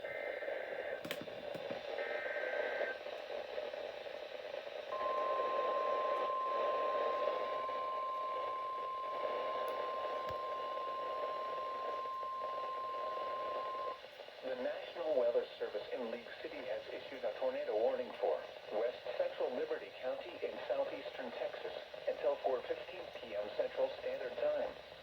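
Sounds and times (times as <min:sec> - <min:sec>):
radio static hiss: 0:00.0 - 0:25.0
high-pitched alarm tone: 0:05.0 - 0:14.0.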